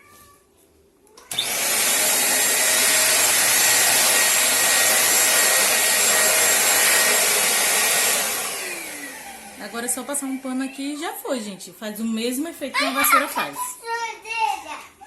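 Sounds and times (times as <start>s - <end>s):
vacuum cleaner running: 1.3s - 10.9s.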